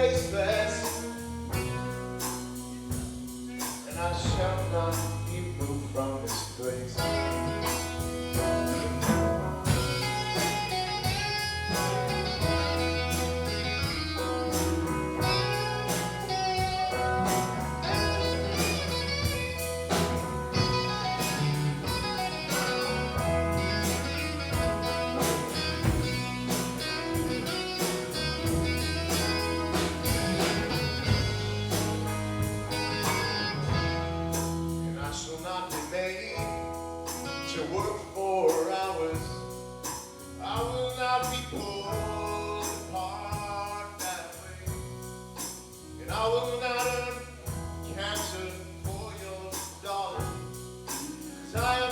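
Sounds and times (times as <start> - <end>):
blues-rock band playing: 0.0 - 51.9
electric guitar: 0.0 - 51.9.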